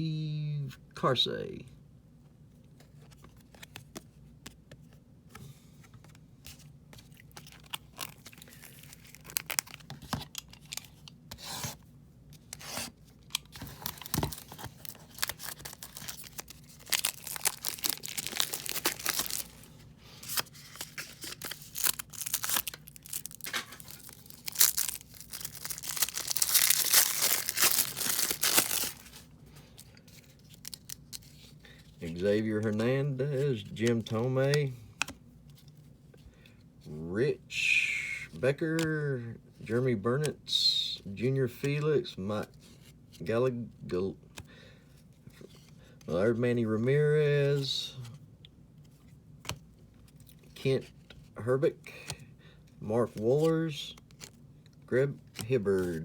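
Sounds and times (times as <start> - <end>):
wrapper tearing and crinkling: 7.4 - 9.9, 13.7 - 19.7, 20.3 - 29.2.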